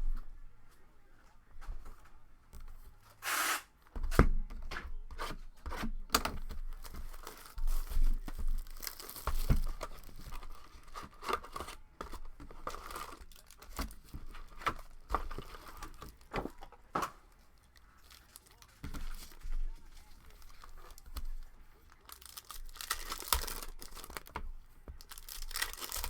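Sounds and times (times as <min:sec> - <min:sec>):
packaging rustling and crinkling: 0:05.2 - 0:26.0.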